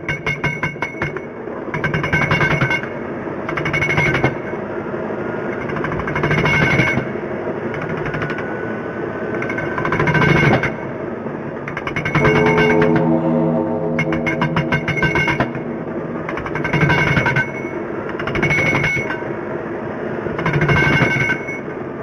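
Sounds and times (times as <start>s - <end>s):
steady low hum: 12.0s - 18.8s.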